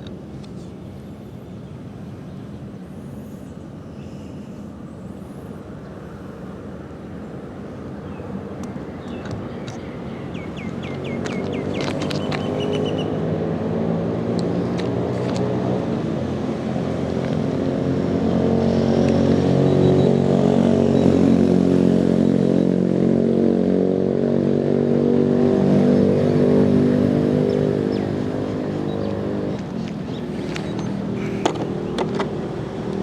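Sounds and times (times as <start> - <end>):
vehicle engine running: 25.0 - 33.0.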